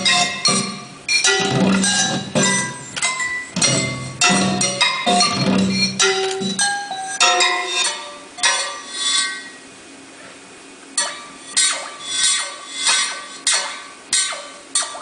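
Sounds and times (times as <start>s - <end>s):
ringing percussion strikes: 0.0s - 9.6s.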